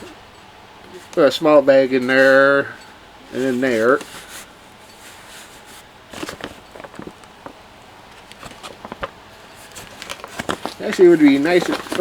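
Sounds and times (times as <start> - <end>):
canvas pack rustling and clicking: 3.3 - 12.0.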